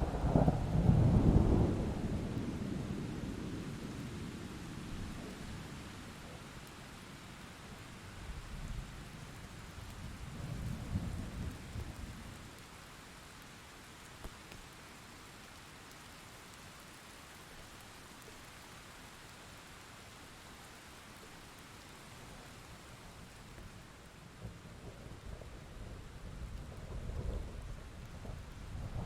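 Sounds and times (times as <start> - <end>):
thunder rumbling: 0.0 - 3.0, 24.4 - 29.0
rain hissing: 7.8 - 29.0.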